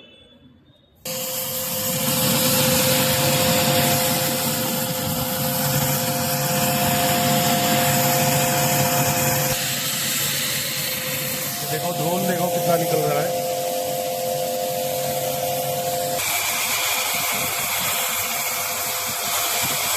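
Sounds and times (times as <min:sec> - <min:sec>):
two-note motor whine: 0:01.1 - 0:09.8
loud rushing hiss: 0:01.1 - 0:19.9.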